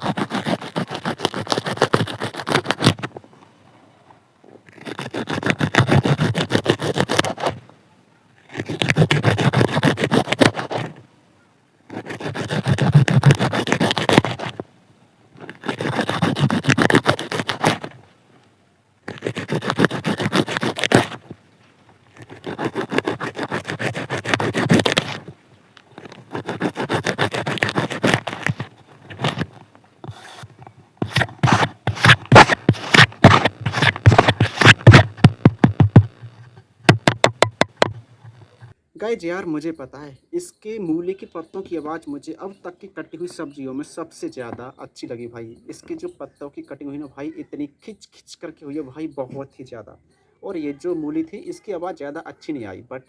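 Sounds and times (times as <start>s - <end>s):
leaves being cut crunching: 0.0s - 3.1s, 4.6s - 7.6s, 8.4s - 11.0s, 11.9s - 14.6s, 15.4s - 18.0s, 19.0s - 21.4s, 22.1s - 36.6s.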